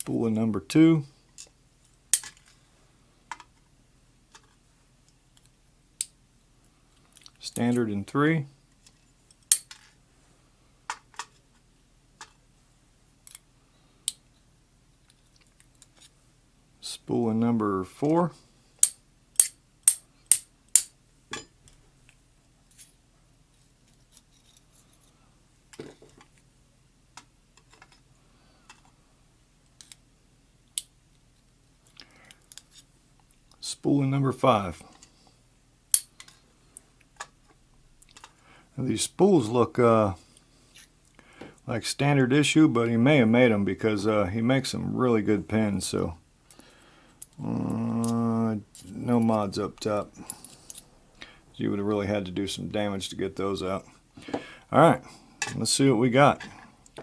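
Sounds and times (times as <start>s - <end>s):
small sharp metal clicks: 8.8s - 9.8s, 18.8s - 20.9s.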